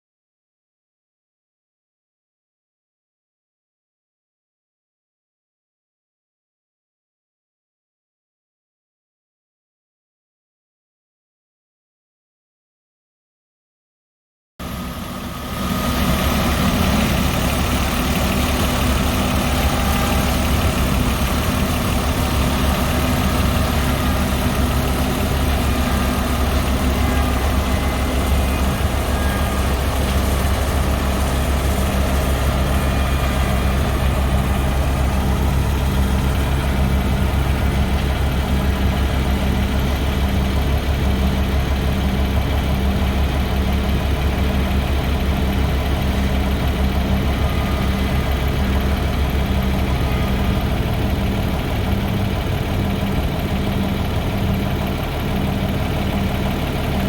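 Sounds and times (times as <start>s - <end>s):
engine droning steadily: 14.6s - 57.0s.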